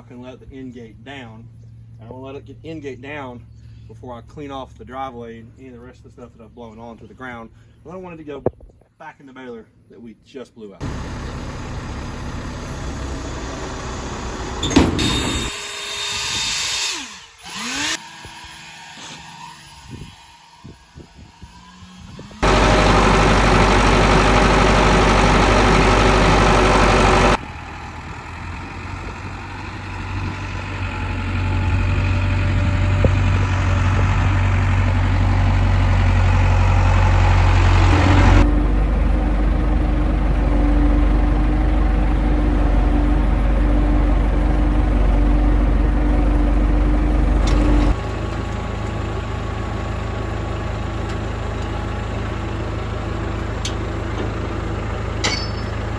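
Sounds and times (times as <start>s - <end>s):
tractor engine running: 10.8s - 15.6s, 22.4s - 55.9s.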